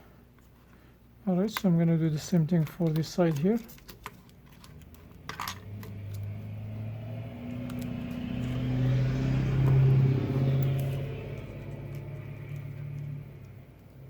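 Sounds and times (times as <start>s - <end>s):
vehicle engine passing: 5.5s - 14.0s.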